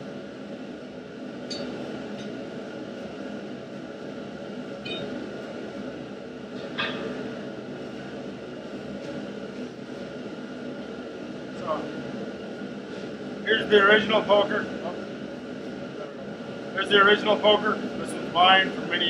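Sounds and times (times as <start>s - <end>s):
gas forge rushing hum: 0.0s - 19.0s.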